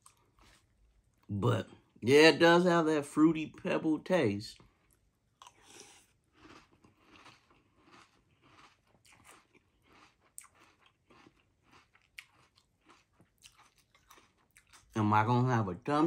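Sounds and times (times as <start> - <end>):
chewing crunchy cereal: 0.0 - 1.3, 4.5 - 15.4.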